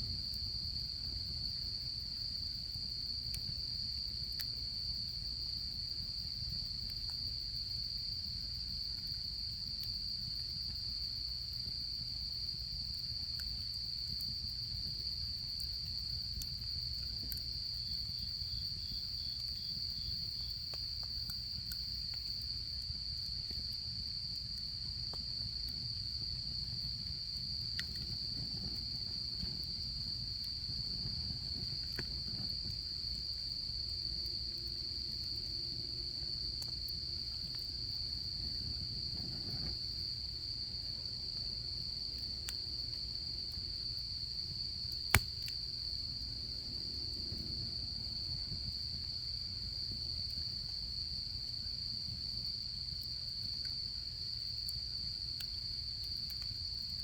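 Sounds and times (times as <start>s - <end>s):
campfire crackling: 0.0s - 48.9s
insects trilling: 0.0s - 57.0s
loud pop from fire: 45.1s - 45.6s.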